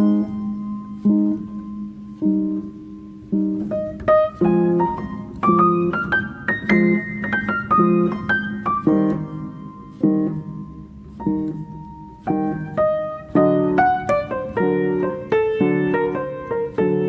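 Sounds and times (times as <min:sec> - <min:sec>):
piano melody: 0:00.0 - 0:17.0.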